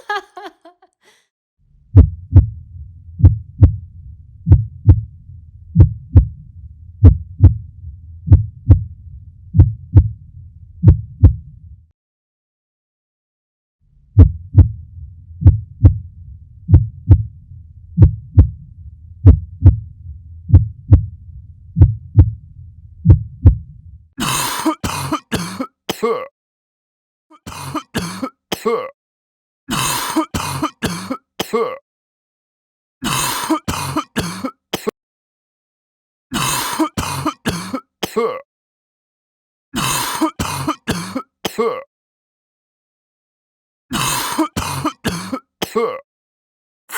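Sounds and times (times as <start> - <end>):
heartbeat thumps: 1.9 - 10.2, 10.8 - 11.7, 14.2 - 24.0
person coughing: 24.2 - 26.3, 27.3 - 29.0, 29.7 - 31.8, 33.0 - 34.9, 36.3 - 38.4, 39.8 - 41.9, 43.9 - 46.0.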